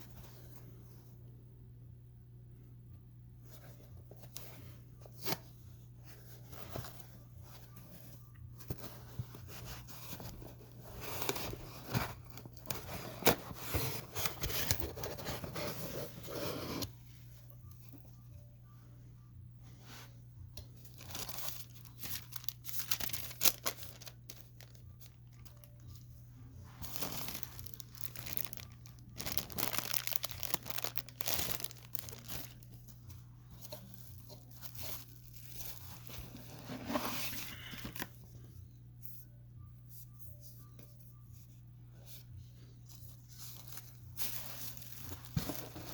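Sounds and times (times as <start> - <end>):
steady low hum: 0.0 - 45.9
packaging tearing and rustling: 20.9 - 25.8, 26.8 - 32.8, 43.5 - 45.9.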